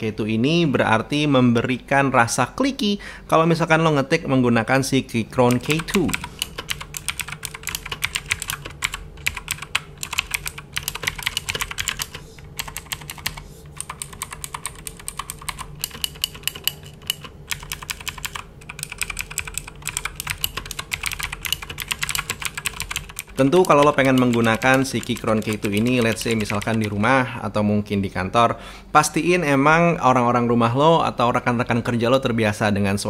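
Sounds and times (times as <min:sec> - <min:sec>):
mechanical keyboard typing: 0:05.4 - 0:27.1.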